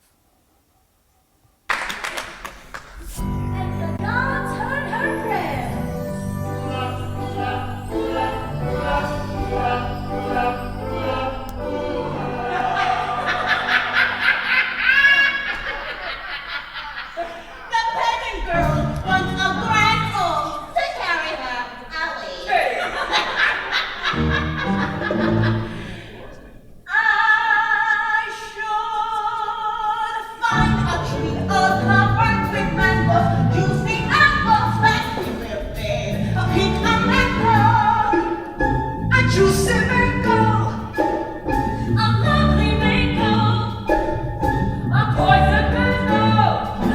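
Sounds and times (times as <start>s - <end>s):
ensemble singing in harmony: 2.8s - 46.9s
held low instrumental notes: 3.0s - 14.3s, 30.6s - 46.9s
musical accompaniment with bass line: 3.2s - 14.2s, 30.6s - 46.9s.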